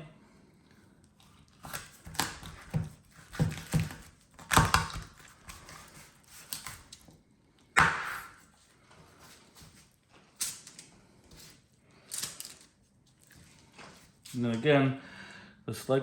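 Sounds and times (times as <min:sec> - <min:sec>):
knife cutting raw chicken: 0:01.2 - 0:07.1, 0:07.8 - 0:08.4.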